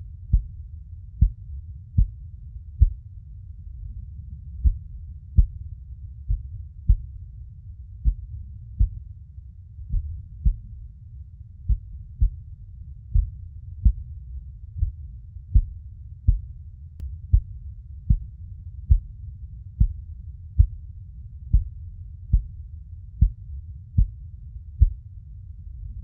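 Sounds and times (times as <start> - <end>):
steady low rumble: 0.0 - 26.0
heartbeat thumps: 0.2 - 0.6, 1.2 - 2.2, 2.8 - 3.0, 4.6 - 7.2, 8.0 - 9.1, 9.8 - 10.8, 11.6 - 12.5, 13.1 - 14.1, 14.7 - 16.6, 17.3 - 19.2, 19.8 - 20.8, 21.5 - 22.6, 23.2 - 24.2, 24.8 - 25.0.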